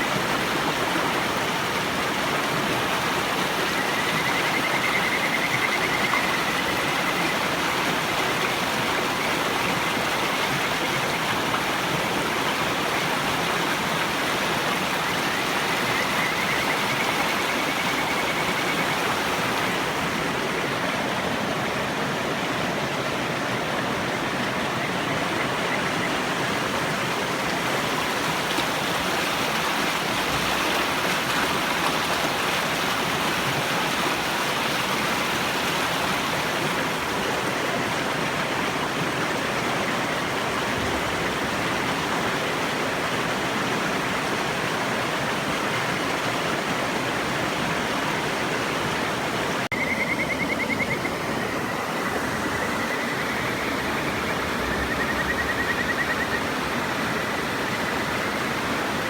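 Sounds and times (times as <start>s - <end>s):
river water rushing: 0.0s - 59.0s
frogs trilling: 3.2s - 11.5s, 14.8s - 20.0s, 24.1s - 26.8s, 49.7s - 59.0s.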